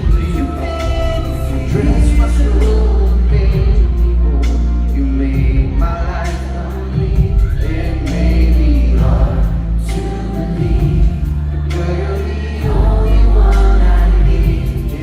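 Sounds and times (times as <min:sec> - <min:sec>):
drum beat: 0:00.0 - 0:02.4, 0:07.0 - 0:08.2, 0:09.0 - 0:09.7, 0:10.6 - 0:11.4
heavy bass: 0:00.0 - 0:15.0
voices singing in harmony: 0:00.0 - 0:15.0.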